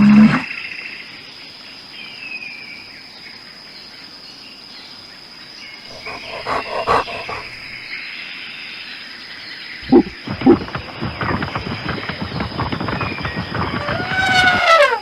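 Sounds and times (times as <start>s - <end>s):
animal calling: 5.9s - 7.8s, 9.8s - 15.0s.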